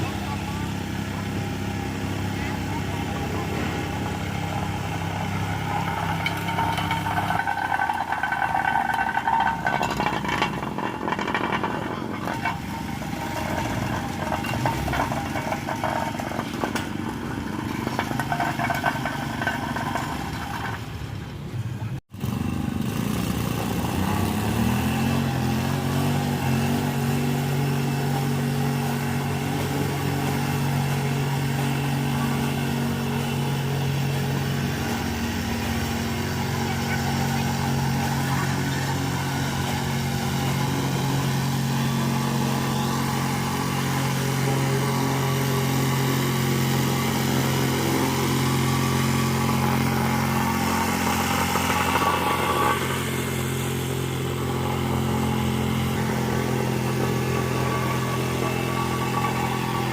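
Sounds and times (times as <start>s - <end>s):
voices: 0.0s - 22.0s, 30.8s - 43.3s
engine running: 0.0s - 59.9s
engine speeding up: 0.0s - 59.9s.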